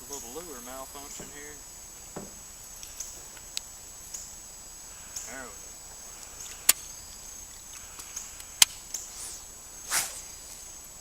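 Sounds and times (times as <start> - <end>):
faint high insect buzz: 0.0 - 11.0
sharp clicks: 2.8 - 4.4, 6.2 - 10.2
short swish: 9.1 - 10.4.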